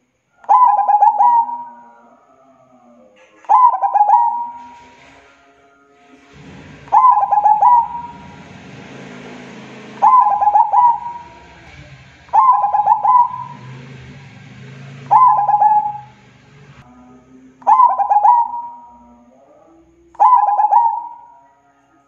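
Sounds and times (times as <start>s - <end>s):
dove cooing: 0.4s - 5.3s, 6.3s - 8.6s, 10.0s - 14.0s, 14.7s - 16.2s, 17.6s - 19.2s, 20.1s - 21.8s.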